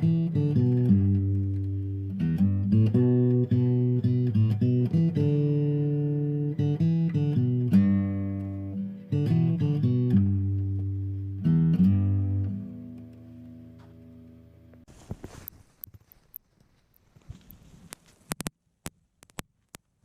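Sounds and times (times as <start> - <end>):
guitar music: 0.0 - 14.8.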